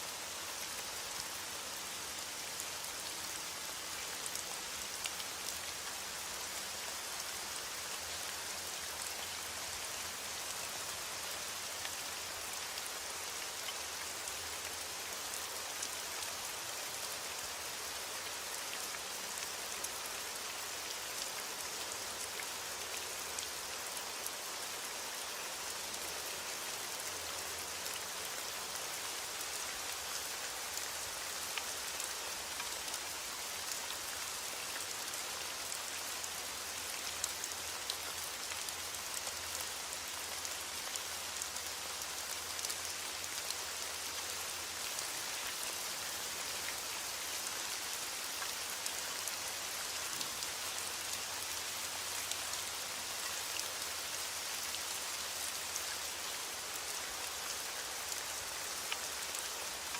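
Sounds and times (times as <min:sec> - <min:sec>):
steady rain hissing: 0:00.0 - 0:59.9
raindrops ticking on a surface: 0:47.9 - 0:56.6.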